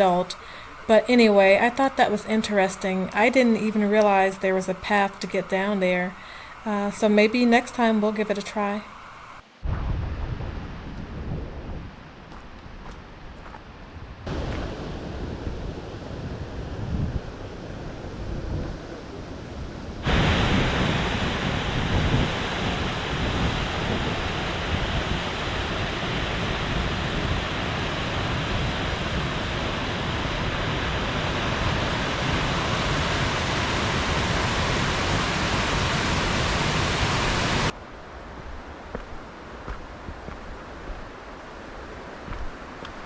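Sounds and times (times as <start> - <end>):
waterfall rushing: 20.0 - 37.7.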